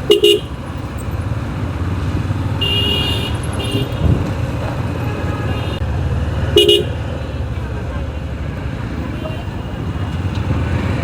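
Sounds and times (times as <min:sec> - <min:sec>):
vehicle horn honking: 0:00.0 - 0:00.6, 0:02.6 - 0:04.1, 0:06.6 - 0:07.0
traffic engine rumble: 0:00.0 - 0:11.0.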